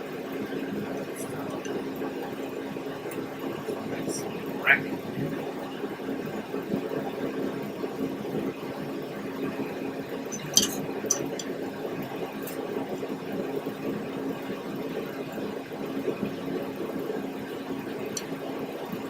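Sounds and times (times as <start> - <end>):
machine hum: 0.0 - 19.0
metallic clinks: 10.4 - 11.5.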